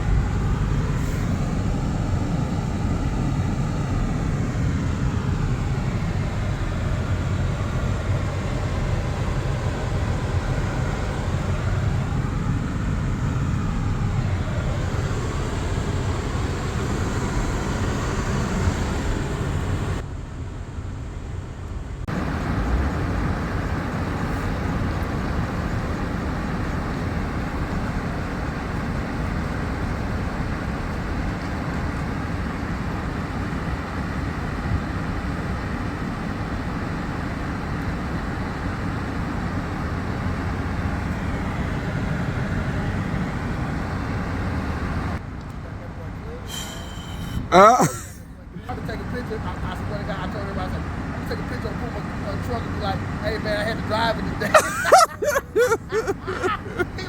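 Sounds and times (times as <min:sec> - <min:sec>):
concrete mixer truck running: 0:00.0 - 0:20.0, 0:38.0 - 0:57.0.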